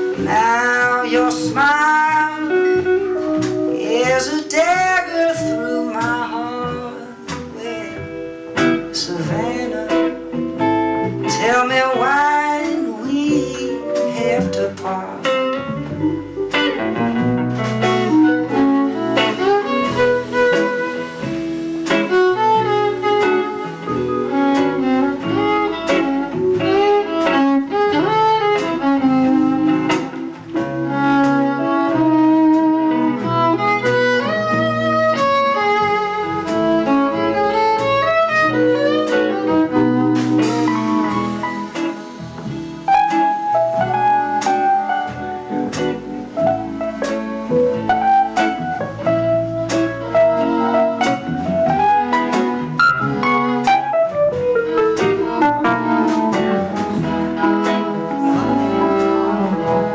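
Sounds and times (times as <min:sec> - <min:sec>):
fiddle solo: 0:00.0 - 0:59.9
guitar and bass accompaniment: 0:00.0 - 0:59.9.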